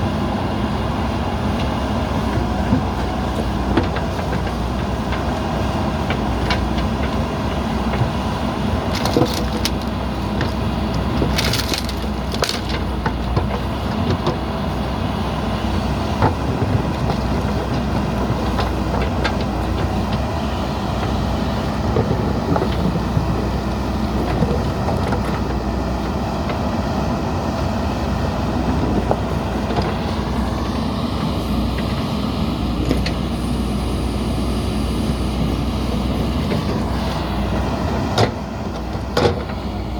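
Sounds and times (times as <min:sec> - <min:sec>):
diesel engine running: 0:00.0 - 0:39.9
sharp crackling knocks: 0:08.8 - 0:14.4.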